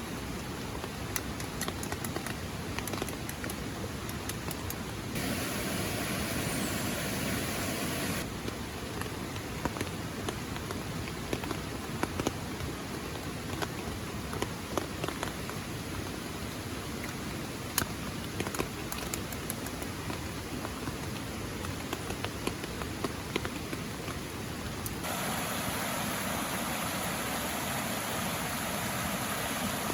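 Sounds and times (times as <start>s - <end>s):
light rain hiss: 0.0s - 29.9s
raindrops ticking on surface: 0.2s - 5.3s, 8.2s - 25.3s.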